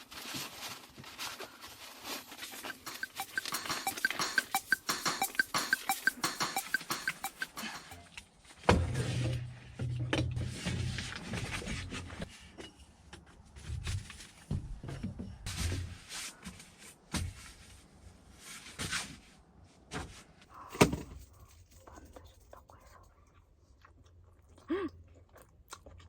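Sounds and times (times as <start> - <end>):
knock: 2.9 - 8.0.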